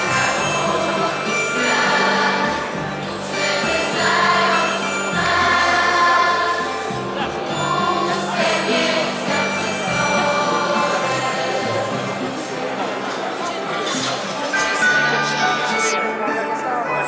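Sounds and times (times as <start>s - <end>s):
choir singing a carol: 0.0s - 17.0s.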